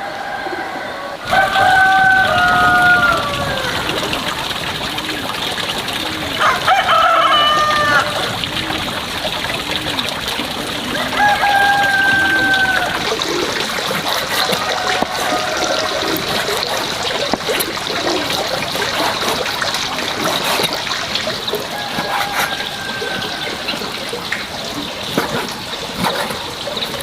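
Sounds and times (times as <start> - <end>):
rooster crowing: 0.0 - 4.4, 6.4 - 8.4, 10.9 - 13.4, 14.6 - 16.5, 21.7 - 23.9
water trickling and splashing: 1.2 - 27.0.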